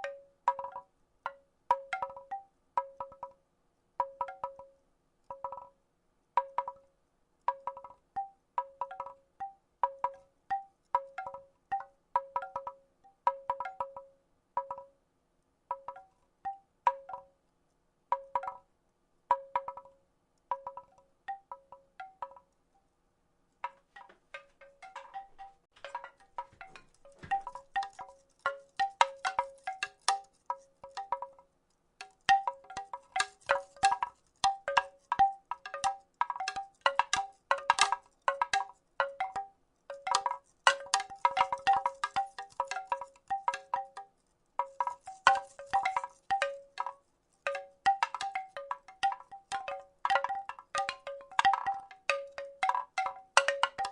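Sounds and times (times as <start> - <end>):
wooden rattle clacking: 23.6 - 31.4, 32.0 - 53.9.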